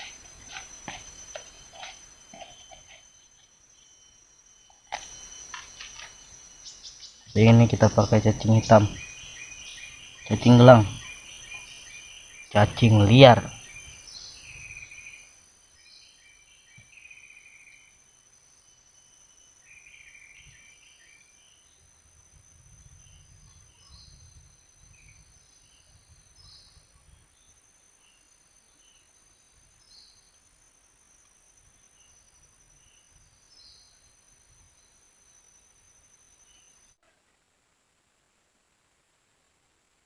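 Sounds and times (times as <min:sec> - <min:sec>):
bird chirps: 0:00.0 - 0:21.9
insects droning: 0:00.0 - 0:40.0.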